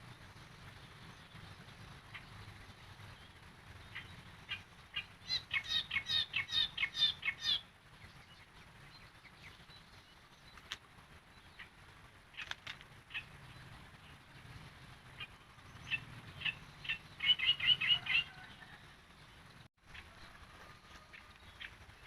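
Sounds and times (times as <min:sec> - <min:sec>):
bird singing warbling phrase: 0:03.1 - 0:08.4, 0:15.2 - 0:18.8.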